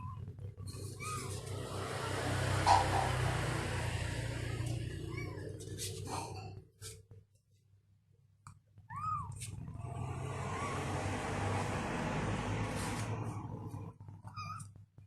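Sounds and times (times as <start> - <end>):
kitten mewing: 0.8 - 1.6, 4.4 - 6.0.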